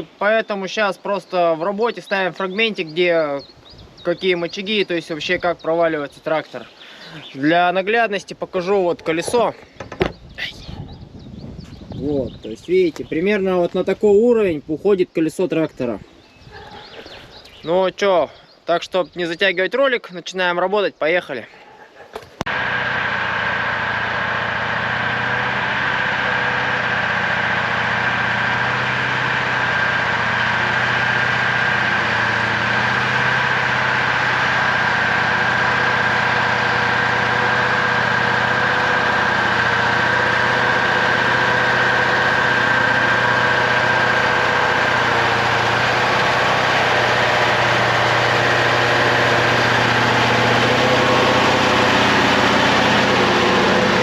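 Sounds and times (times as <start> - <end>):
tractor diesel engine under load: 22.4 - 54.0.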